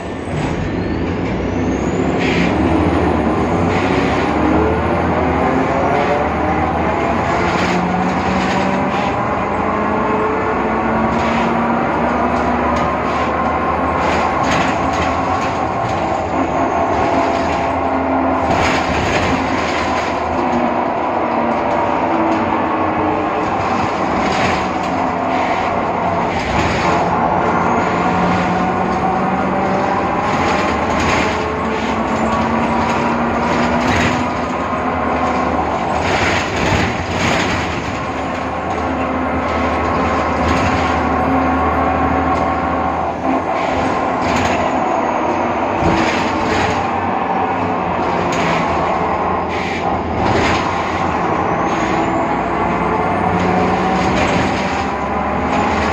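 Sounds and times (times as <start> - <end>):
bus running rumble: 0.0 - 55.9
knocks and rattles: 10.9 - 22.5, 23.3 - 27.3, 28.0 - 41.4, 43.5 - 44.8, 45.8 - 47.0, 50.1 - 52.0, 53.3 - 55.9.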